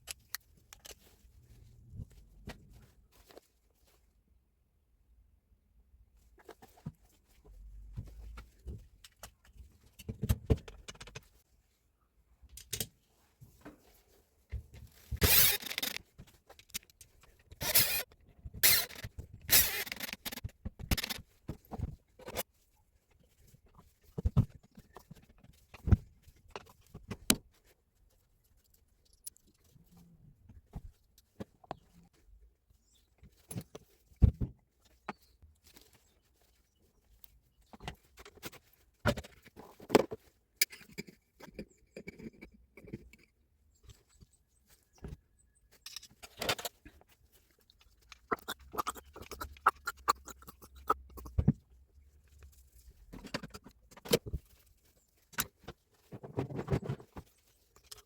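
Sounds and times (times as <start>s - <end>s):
hand tools clicking and knocking: 15.2s - 16.0s, 16.6s - 21.2s.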